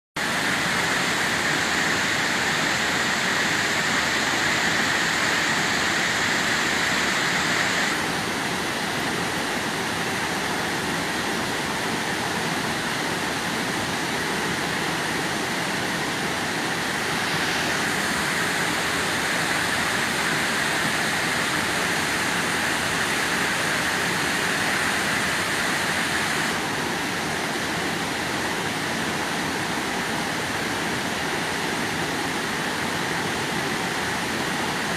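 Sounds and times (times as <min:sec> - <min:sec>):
waterfall roaring: 0:00.2 - 0:34.9.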